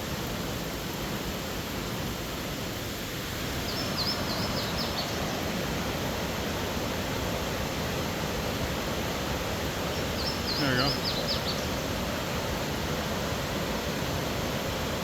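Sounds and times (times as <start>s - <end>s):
waterfall roaring: 0.0s - 15.0s
bird chirping: 3.7s - 5.4s, 10.0s - 11.9s.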